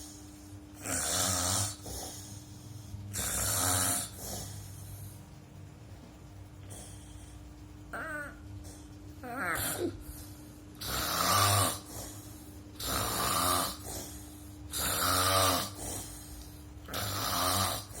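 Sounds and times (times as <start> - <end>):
man snoring: 0.8 - 2.4, 3.1 - 4.6, 10.8 - 18.0
soft breathing: 1.7 - 3.2, 4.0 - 7.8, 11.8 - 12.8.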